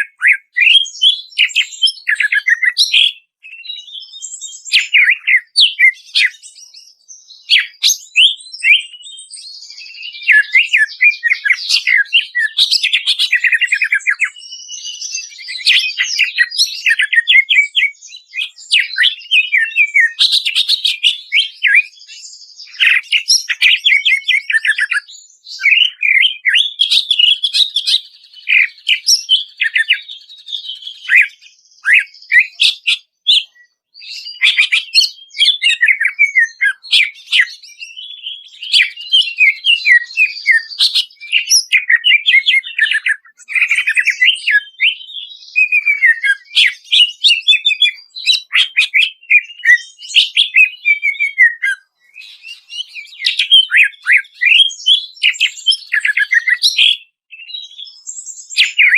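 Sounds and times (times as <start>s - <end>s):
bird singing whistled chirps: 0.0s - 58.9s.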